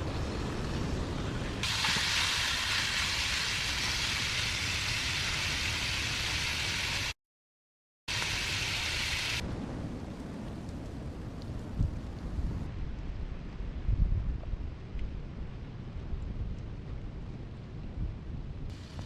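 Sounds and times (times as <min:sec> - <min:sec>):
steady hissing noise: 0:08.1 - 0:09.4, 0:18.7 - 0:19.0.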